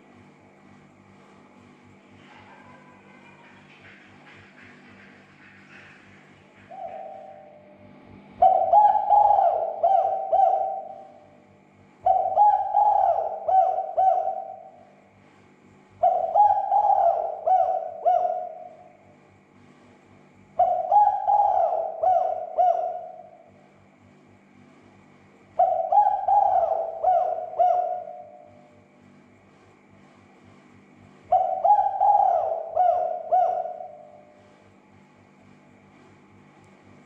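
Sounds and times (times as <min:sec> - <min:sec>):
dove cooing: 0:02.3 - 0:15.2, 0:16.0 - 0:19.1, 0:20.6 - 0:23.6, 0:25.5 - 0:28.8, 0:31.3 - 0:34.5.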